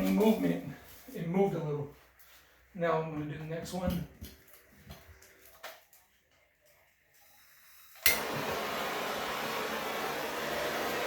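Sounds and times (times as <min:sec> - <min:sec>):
torch ignition click: 0:08.0 - 0:08.4
torch flame hissing: 0:08.0 - 0:11.0.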